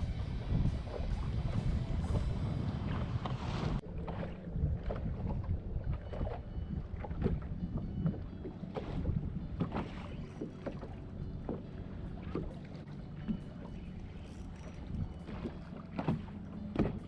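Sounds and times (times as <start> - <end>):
wind on microphone: 0.0 - 10.4, 13.3 - 15.6
water against hull: 0.0 - 17.0
small knocks and splashes: 7.0 - 13.8, 14.5 - 17.0.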